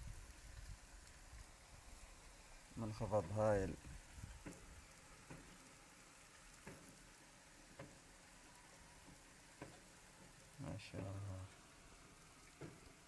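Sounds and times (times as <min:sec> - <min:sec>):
heavy rain hiss: 0:00.0 - 0:13.0
raindrops tapping: 0:02.8 - 0:08.2, 0:09.0 - 0:13.0.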